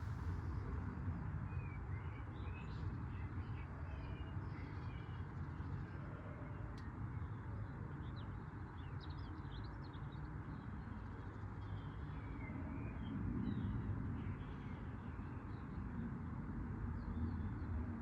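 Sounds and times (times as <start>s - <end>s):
steady low rumble: 0.0s - 1.0s.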